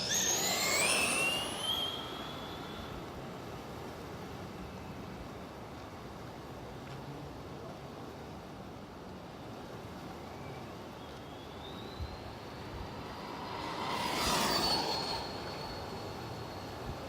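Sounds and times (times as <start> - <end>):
electric motor whine: 0.0 - 3.1, 12.3 - 17.0
tyre and air noise: 0.0 - 3.1, 11.6 - 17.0.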